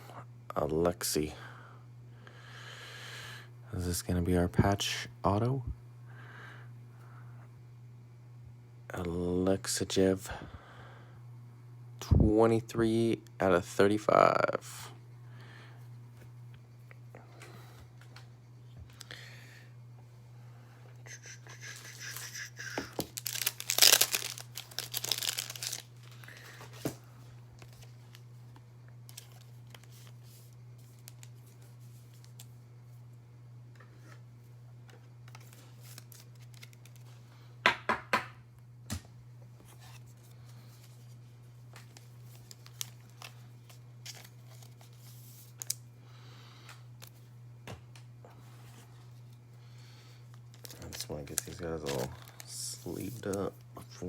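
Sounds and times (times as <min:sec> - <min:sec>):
steady low hum: 0:00.0 - 0:54.0
foil wrapper crinkling and tearing: 0:21.7 - 0:26.6, 0:29.1 - 0:30.2, 0:35.3 - 0:37.1, 0:41.8 - 0:45.8, 0:50.5 - 0:54.0.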